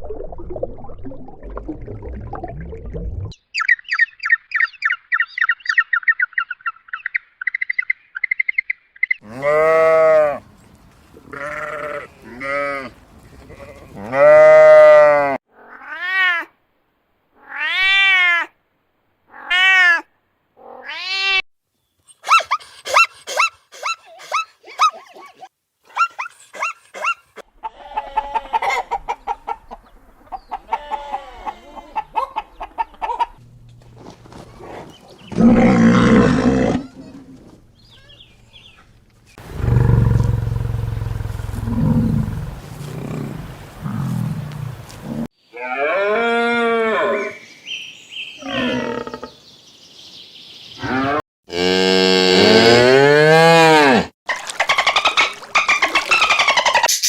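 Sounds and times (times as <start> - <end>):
cow mooing: 9.2 - 10.4, 39.4 - 47.2, 50.9 - 54.1
animal calls: 39.4 - 47.4, 54.4 - 57.0.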